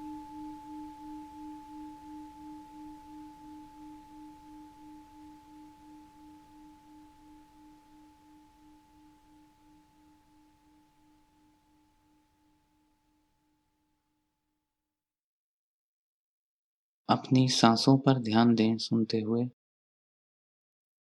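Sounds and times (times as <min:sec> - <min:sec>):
singing bowl ringing: 0:00.0 - 0:12.9.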